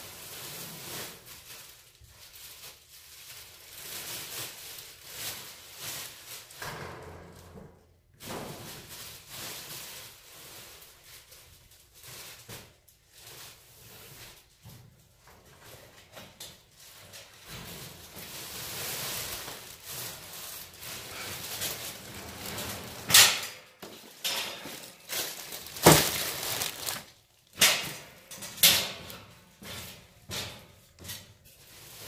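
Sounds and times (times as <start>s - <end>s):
bags and boxes rustling: 0.0s - 6.6s, 8.6s - 27.6s
objects knocking and thudding: 22.4s - 29.1s.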